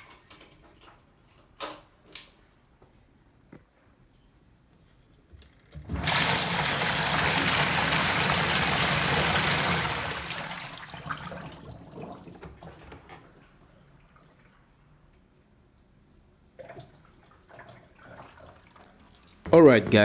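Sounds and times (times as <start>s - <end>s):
water gushing from drain: 5.8s - 13.1s, 16.6s - 19.4s
water dripping: 6.0s - 12.5s.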